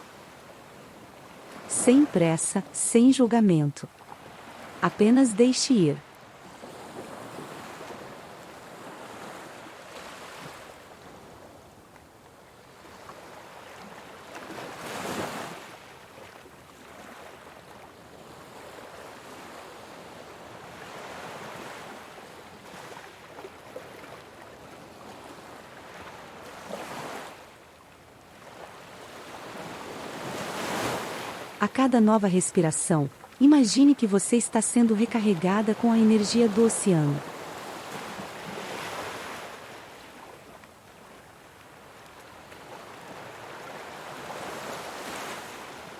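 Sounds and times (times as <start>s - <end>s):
waves breaking: 4.0s - 11.5s, 12.7s - 19.8s, 28.4s - 40.4s.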